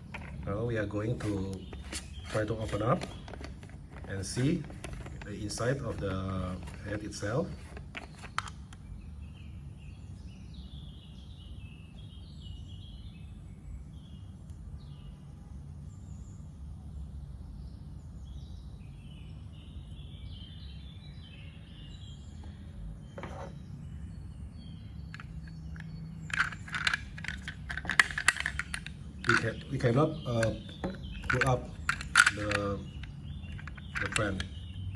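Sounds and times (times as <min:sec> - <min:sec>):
handling clicks: 0:00.0 - 0:08.8, 0:25.2 - 0:34.9
small birds chirping: 0:00.0 - 0:34.9.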